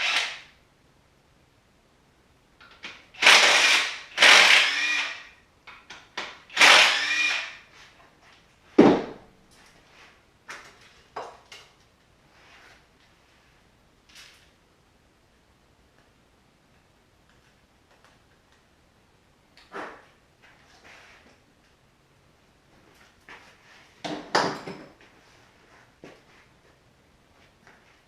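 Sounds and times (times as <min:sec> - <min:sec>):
power tool bursts: 0:00.0 - 0:00.5, 0:03.2 - 0:05.3, 0:06.5 - 0:07.6
thump: 0:08.8 - 0:09.2.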